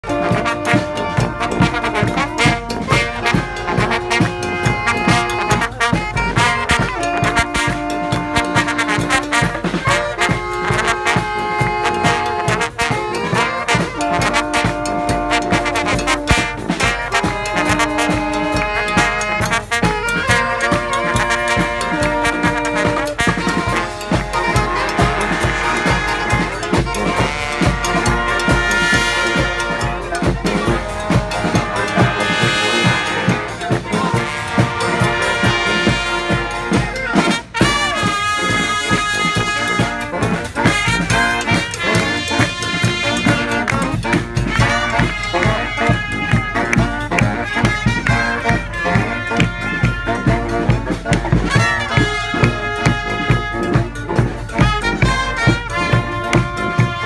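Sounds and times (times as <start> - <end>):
brass band playing: 0.0 - 57.0
drum beat: 0.0 - 57.0.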